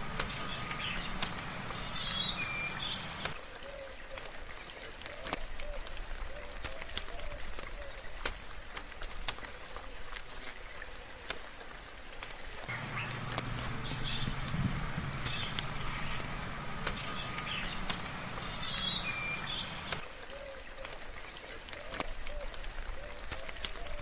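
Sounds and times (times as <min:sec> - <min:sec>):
low steady hum: 0:00.0 - 0:03.4, 0:12.7 - 0:20.0
birds chirping: 0:00.0 - 0:04.2, 0:12.6 - 0:21.1
sharp drips: 0:00.0 - 0:24.0
soft rain patter: 0:00.0 - 0:24.0
short lower bird calls: 0:12.7 - 0:20.0.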